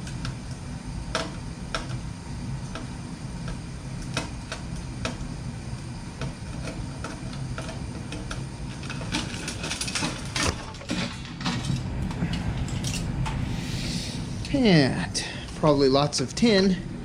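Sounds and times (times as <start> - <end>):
low steady hum: 0.0 - 17.0
tools and metal parts clicking: 12.6 - 13.1.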